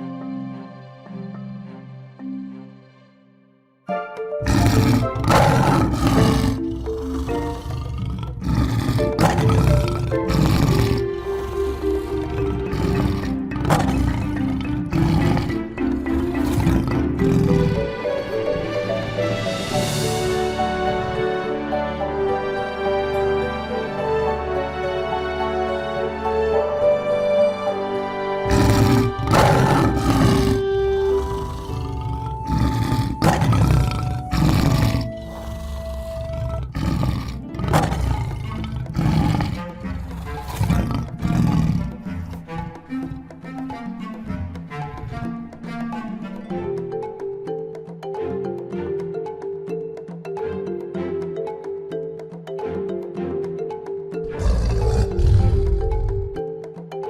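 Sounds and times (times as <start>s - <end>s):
background music with held notes: 0.0s - 57.0s
wild animal roaring: 4.4s - 19.0s, 28.4s - 43.2s, 54.2s - 56.4s.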